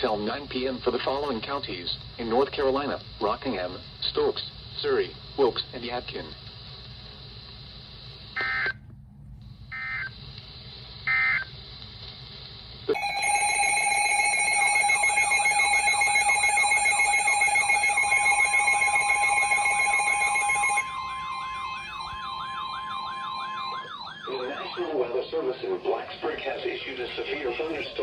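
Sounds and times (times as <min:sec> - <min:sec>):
electronic alert siren: 0:13.0 - 0:28.0
digital data bursts: 0:14.6 - 0:28.0.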